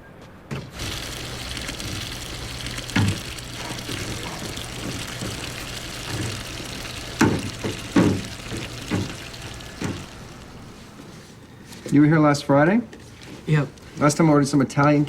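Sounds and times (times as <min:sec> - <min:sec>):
tap running into sink: 0:00.8 - 0:11.2.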